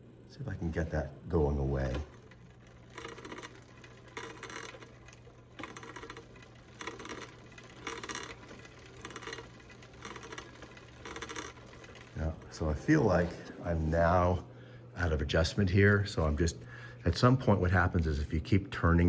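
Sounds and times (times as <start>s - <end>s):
bicycle chain ticking over cogs: 1.4s - 13.2s.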